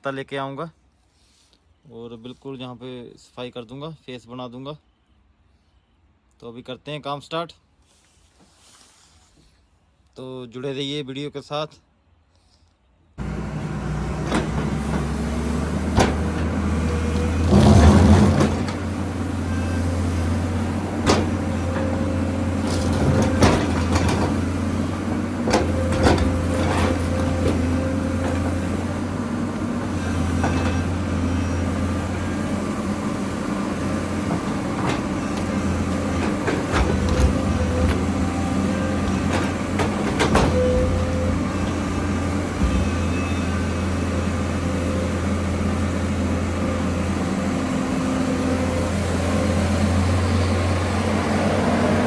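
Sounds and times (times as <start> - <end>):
rocks knocking and clanking: 13.2 - 19.4, 20.2 - 29.1, 32.5 - 43.9
excavator diesel engine running: 13.2 - 52.0.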